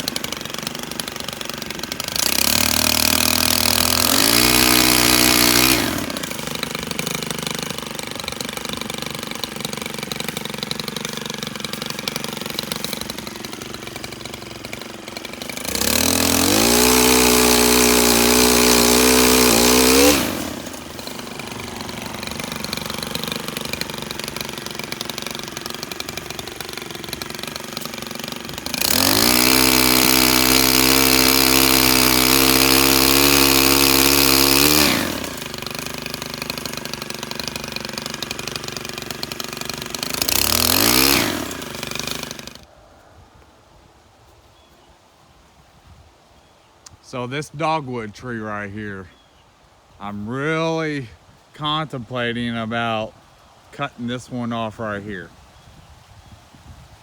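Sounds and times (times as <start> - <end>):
pole saw engine revving: 0.0 - 42.7, 53.8 - 55.3.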